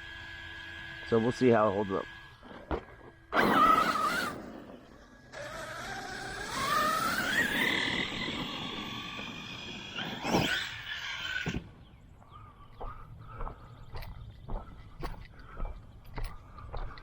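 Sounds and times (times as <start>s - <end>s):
toy truck motor whining: 0.0s - 11.7s.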